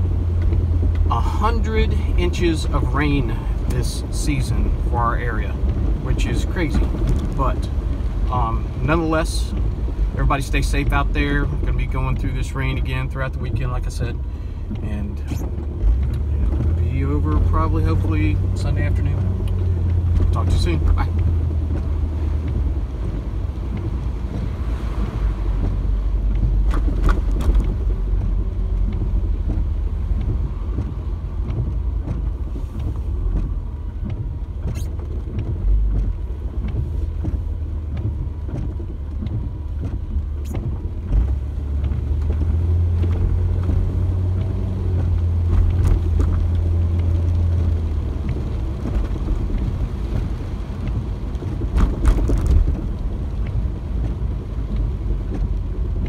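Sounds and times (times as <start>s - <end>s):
car road rumble: 0.0s - 56.0s.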